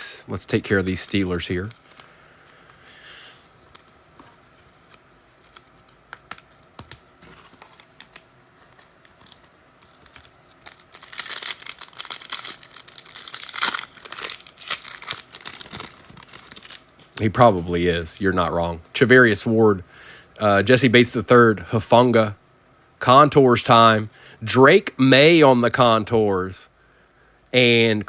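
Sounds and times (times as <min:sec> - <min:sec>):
cards clicking: 0:04.9 - 0:12.6
card pack wrapper tearing: 0:05.4 - 0:17.3.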